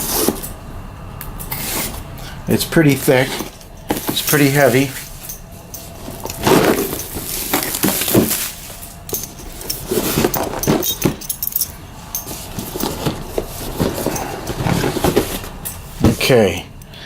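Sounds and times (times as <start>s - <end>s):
cardboard box rustling: 6.0s - 8.9s
plastic pieces clattering: 6.1s - 11.6s.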